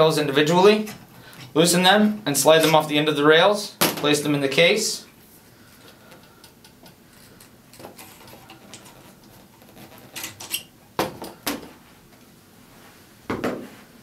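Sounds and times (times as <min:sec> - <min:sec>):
metal parts clicking and knocking: 0:06.5 - 0:10.7.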